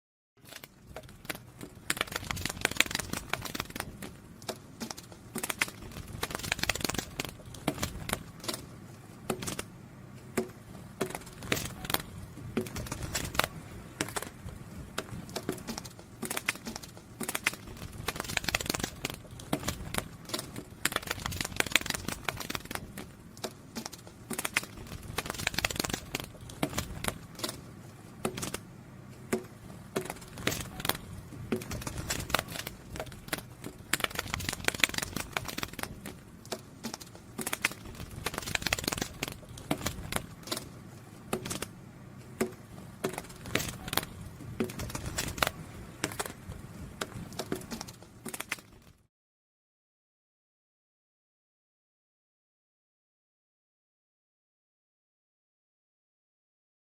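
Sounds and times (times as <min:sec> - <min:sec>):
butterfly wings fluttering: 0:00.4 - 0:04.1, 0:04.7 - 0:08.7, 0:11.0 - 0:23.0, 0:23.8 - 0:27.7, 0:30.0 - 0:40.8, 0:43.1 - 0:48.8.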